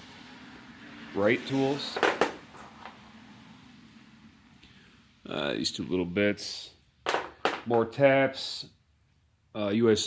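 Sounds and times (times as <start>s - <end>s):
low hum: 0.0s - 6.9s
faint steady hiss: 0.0s - 10.0s.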